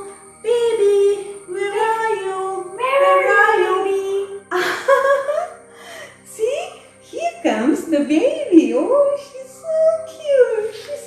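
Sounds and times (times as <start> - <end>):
person singing children's tune: 0.0 - 4.5.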